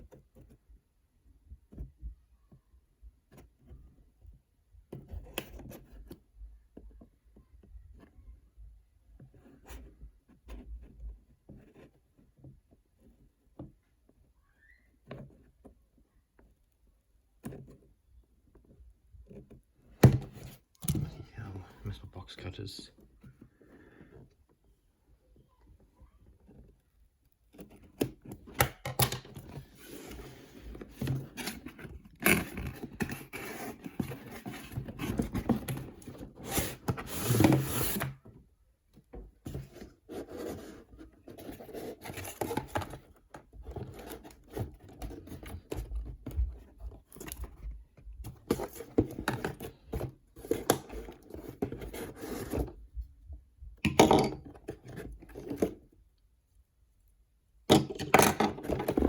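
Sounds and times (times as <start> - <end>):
cardboard box rubbing and tearing: 29.8 - 38.2.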